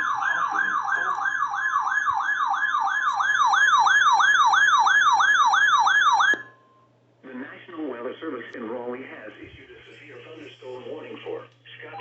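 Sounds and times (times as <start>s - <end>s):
rapid falling-pitch siren: 0.0s - 6.5s
steady warning alarm tone: 0.0s - 6.8s.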